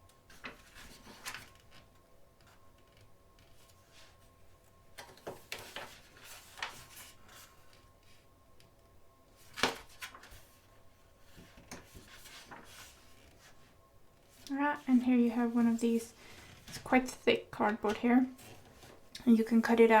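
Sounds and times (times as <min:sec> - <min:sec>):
magazine pages rustling: 0:00.3 - 0:01.8, 0:05.0 - 0:08.2, 0:09.4 - 0:14.4
page slap: 0:09.5 - 0:10.2.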